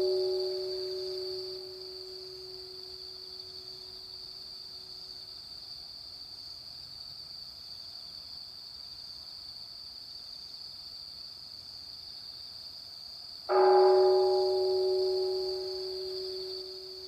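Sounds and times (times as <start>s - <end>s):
temple bell hum: 0.0s - 3.6s, 13.5s - 17.0s
insects chirring: 0.0s - 17.0s.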